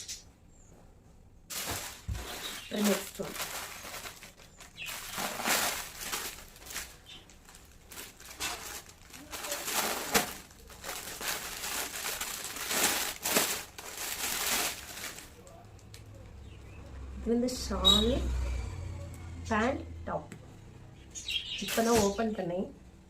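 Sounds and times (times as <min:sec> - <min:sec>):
cloth rustling: 0:01.5 - 0:15.4
plastic packaging crinkling: 0:01.5 - 0:16.0.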